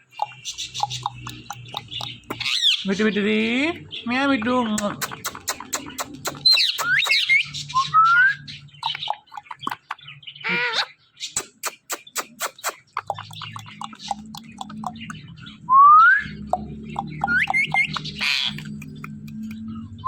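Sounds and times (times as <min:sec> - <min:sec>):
parrot sharp clicks: 0:00.2 - 0:02.7, 0:04.8 - 0:07.2, 0:11.4 - 0:15.2, 0:16.5 - 0:19.6
parrot whistling and chirping: 0:00.2 - 0:02.9, 0:05.2 - 0:09.7, 0:10.4 - 0:19.4.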